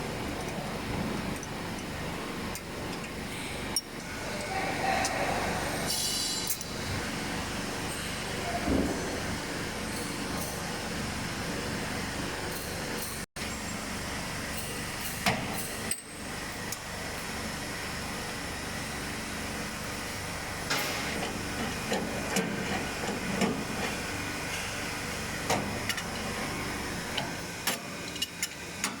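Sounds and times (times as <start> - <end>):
steady background noise: 0.0 - 29.0
tools and metal parts clicking: 5.9 - 6.7, 27.2 - 29.0.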